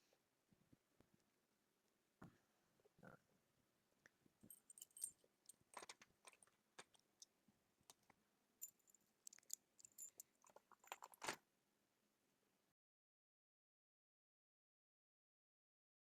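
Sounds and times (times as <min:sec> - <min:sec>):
small objects clicking and rattling: 0:04.5 - 0:07.3, 0:07.9 - 0:11.4.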